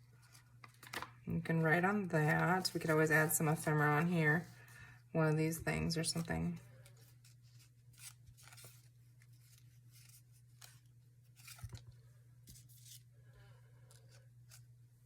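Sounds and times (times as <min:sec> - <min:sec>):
paper rustling and scraping: 0:00.0 - 0:01.1, 0:02.2 - 0:04.5, 0:06.2 - 0:13.1.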